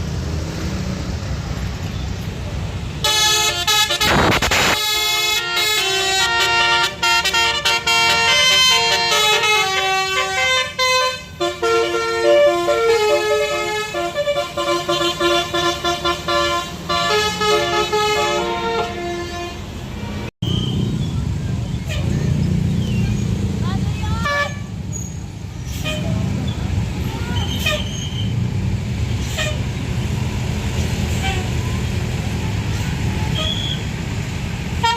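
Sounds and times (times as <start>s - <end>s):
multi-tone musical air horn: 3.0s - 19.7s.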